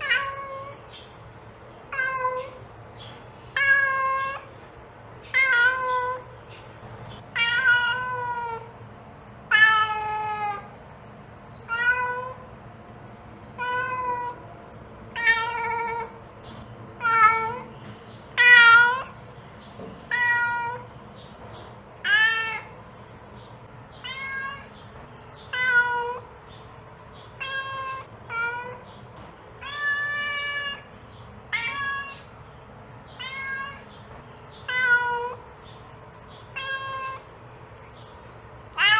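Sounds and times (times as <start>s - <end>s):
cat meowing: 0.0s - 0.8s, 1.9s - 2.6s, 3.5s - 4.5s, 5.3s - 6.4s, 7.3s - 8.7s, 9.5s - 10.8s, 11.6s - 12.5s, 13.5s - 14.4s, 15.1s - 16.2s, 16.9s - 17.7s, 18.3s - 19.2s, 20.1s - 20.9s, 22.0s - 22.8s, 24.0s - 26.4s, 27.3s - 28.9s, 29.6s - 32.3s, 33.1s - 34.0s, 34.6s - 35.6s, 36.4s - 37.3s.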